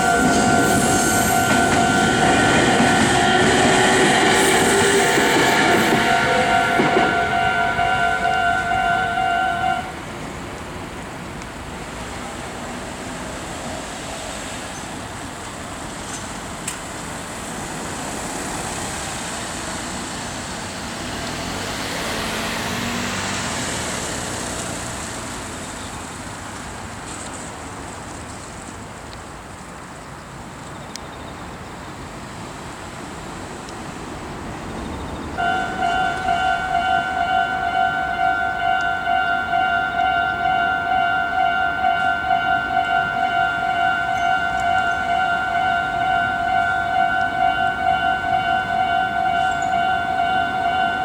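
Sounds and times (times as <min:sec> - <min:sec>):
level crossing warning bell: 0:00.0 - 0:10.2, 0:35.4 - 0:51.0
road noise: 0:00.0 - 0:51.0
vehicle passing: 0:20.7 - 0:25.3.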